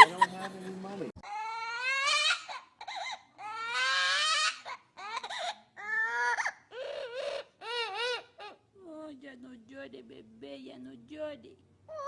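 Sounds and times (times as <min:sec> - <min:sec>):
animal wailing cries: 0:01.2 - 0:08.6.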